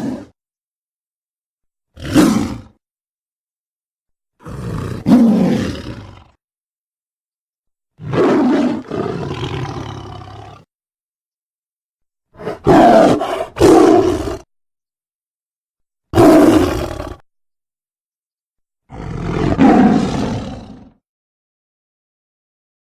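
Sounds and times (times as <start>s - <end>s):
tiger roaring: 0.0s - 0.3s, 2.0s - 2.8s, 4.4s - 6.4s, 8.0s - 10.7s, 12.4s - 14.4s, 16.2s - 17.2s, 18.9s - 21.0s.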